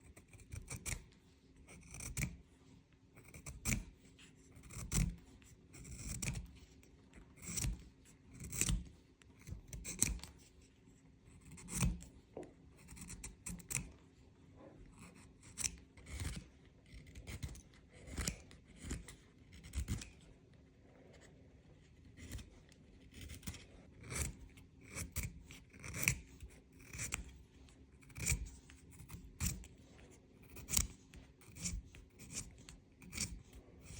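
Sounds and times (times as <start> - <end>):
pencil sharpening scrapes: 3.2 - 3.9, 4.5 - 6.5, 7.4 - 8.9, 11.3 - 12.1, 12.8 - 13.9, 14.9 - 20.2, 22.2 - 27.4, 28.0 - 29.8, 30.4 - 33.9.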